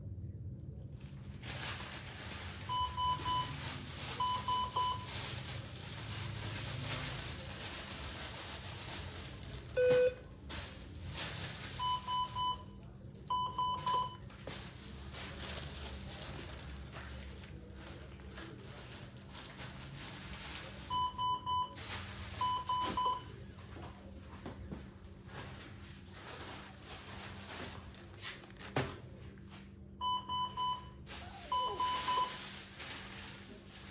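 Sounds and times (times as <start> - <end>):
medical monitor alarm beeping: 2.7 - 3.6, 4.2 - 5.1, 9.8 - 10.3, 11.8 - 14.2, 20.9 - 21.8, 22.4 - 23.4, 30.0 - 32.4.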